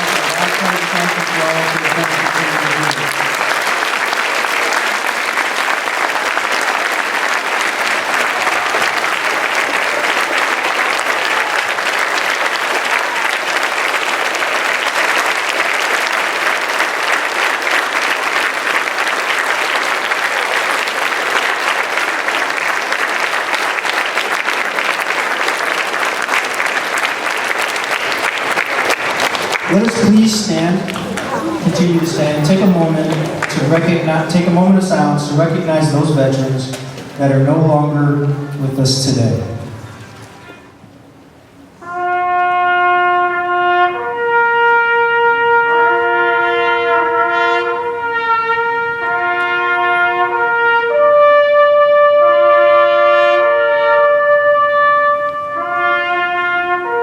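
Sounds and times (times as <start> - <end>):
large crowd applauding: 0.0 - 37.2.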